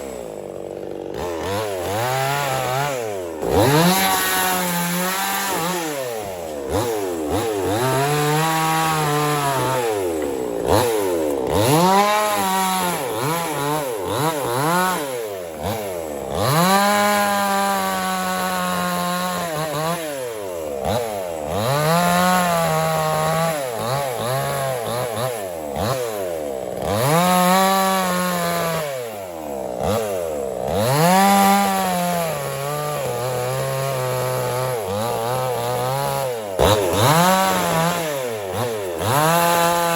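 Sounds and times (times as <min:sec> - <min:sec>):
chainsaw cutting wood: 0:00.0 - 0:39.9.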